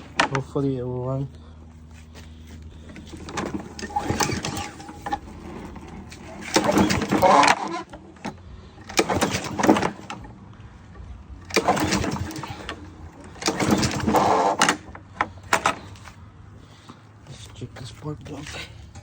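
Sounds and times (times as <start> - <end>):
lawn mower recoil starter pulls: 0.0 - 0.6, 2.6 - 16.2
engine turning over: 0.0 - 16.9.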